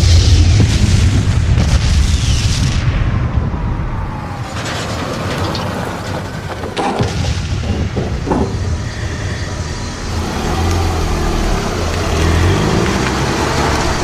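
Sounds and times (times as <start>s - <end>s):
explosions with low rumble: 0.0s - 10.1s
scattered crackles: 0.0s - 14.0s.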